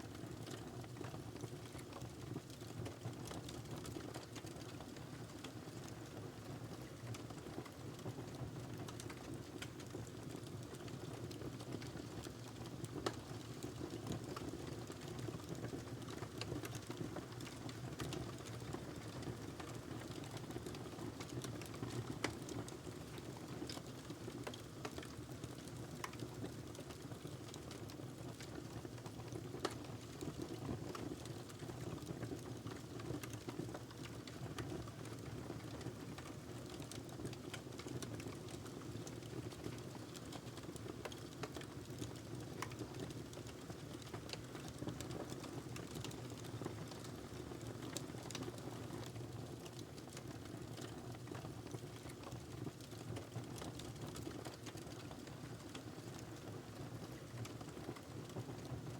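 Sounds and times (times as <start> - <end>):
fire crackling and popping: 8.7 - 58.8.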